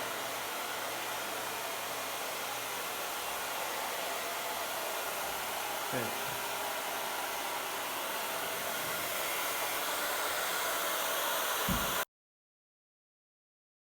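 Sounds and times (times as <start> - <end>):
hair dryer blowing: 0.0 - 12.1
low thump: 11.7 - 12.0.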